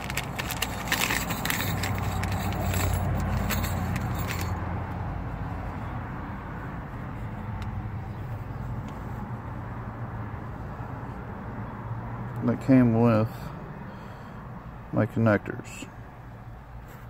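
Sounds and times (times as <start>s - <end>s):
connector fittings rattling: 0.0s - 4.6s.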